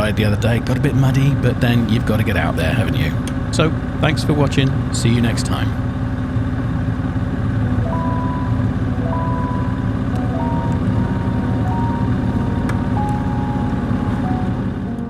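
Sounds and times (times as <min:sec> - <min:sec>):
motorcycle engine running: 0:00.0 - 0:15.0
simple melody of held notes: 0:07.4 - 0:15.0.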